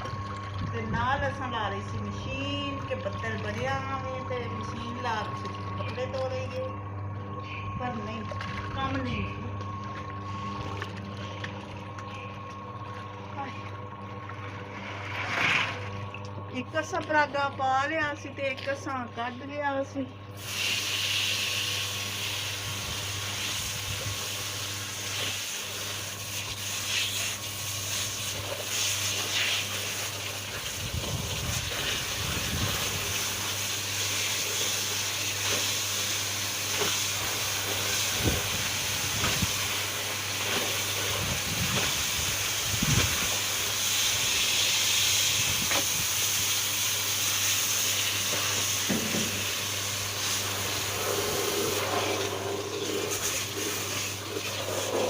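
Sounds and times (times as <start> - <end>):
washing machine motor hum: 0.0 - 55.0
water hissing: 20.4 - 30.6.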